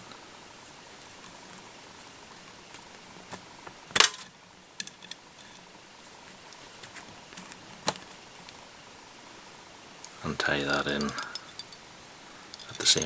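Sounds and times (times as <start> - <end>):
tools clicking and tapping: 10.8 - 11.8.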